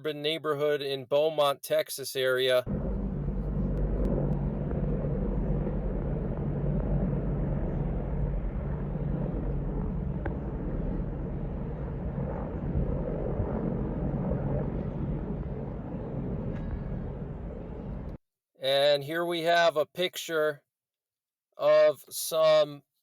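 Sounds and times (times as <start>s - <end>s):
helicopter rotor drone: 2.7s - 18.2s.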